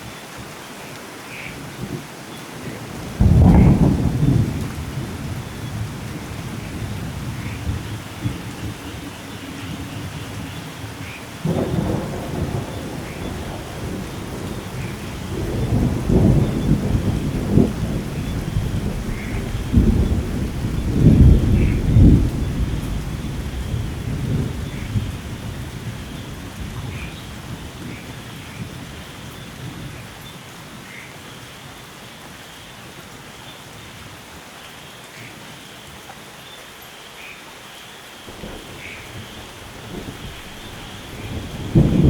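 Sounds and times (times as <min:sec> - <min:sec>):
steady rain falling: 0:00.0 - 0:42.0
rolling thunder: 0:03.0 - 0:29.0, 0:38.3 - 0:42.0.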